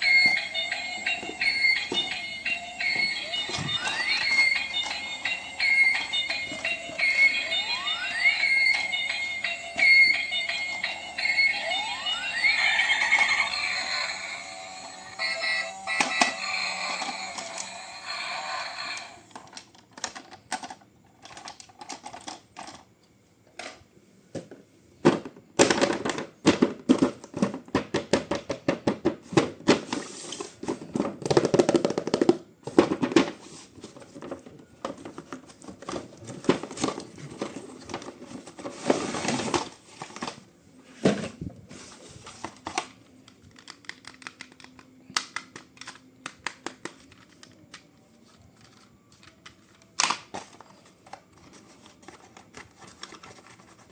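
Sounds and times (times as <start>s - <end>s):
toy packaging clicks and rattles: 0.0s - 22.9s, 42.4s - 53.9s.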